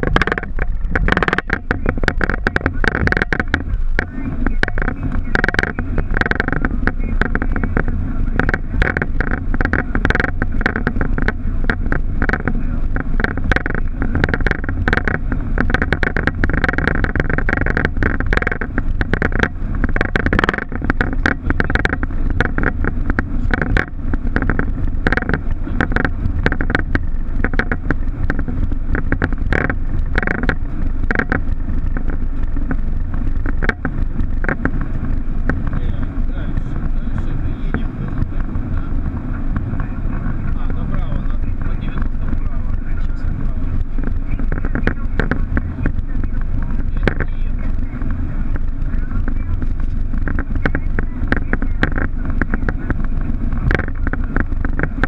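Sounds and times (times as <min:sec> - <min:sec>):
clicks and rattles: 0:00.0 - 0:55.0
low rumble of aircraft engines: 0:00.0 - 0:55.0.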